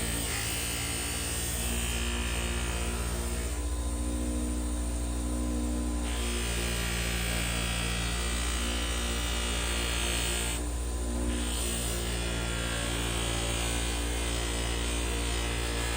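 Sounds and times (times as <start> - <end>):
grinder motor hum: 0.0 - 15.9.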